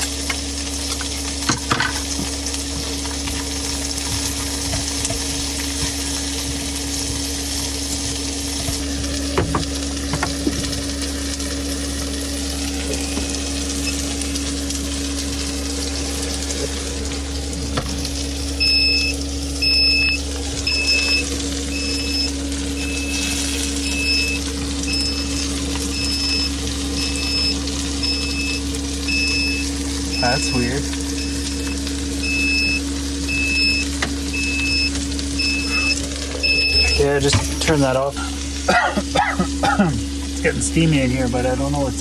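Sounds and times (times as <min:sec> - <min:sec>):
food sizzling in a pan: 0:00.0 - 0:42.0
steady hum: 0:00.0 - 0:42.0
electronic warning beeps: 0:13.0 - 0:14.4, 0:18.4 - 0:38.3.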